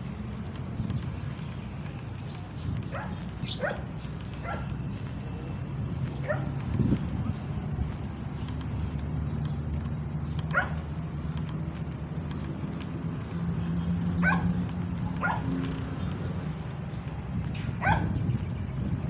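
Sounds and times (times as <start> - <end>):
large dog barking: 2.9 - 4.7, 6.2 - 6.6, 10.5 - 10.8, 14.2 - 14.6, 15.2 - 15.5, 17.8 - 18.2.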